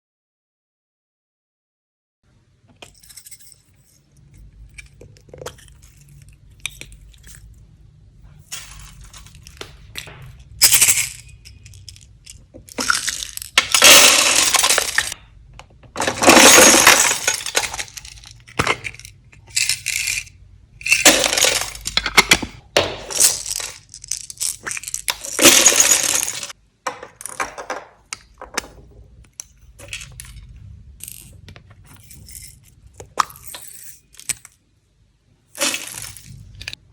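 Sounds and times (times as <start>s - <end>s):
containers clinking: 8.5s - 15.2s, 16.0s - 28.8s, 35.6s - 36.8s.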